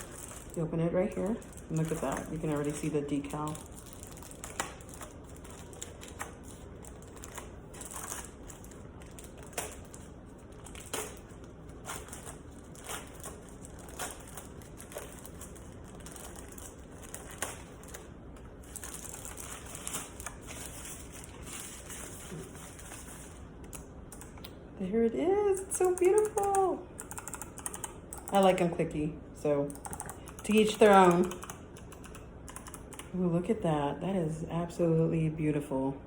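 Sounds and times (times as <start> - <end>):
paper and plastic wrap crinkling: 0.0 - 23.8.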